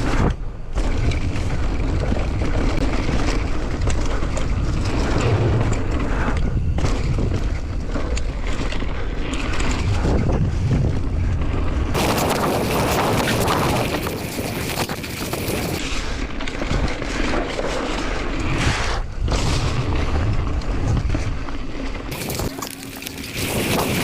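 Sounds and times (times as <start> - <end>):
wind rushing over microphone: 0.0 - 17.0
bike tyres crunching on dirt: 0.0 - 24.0.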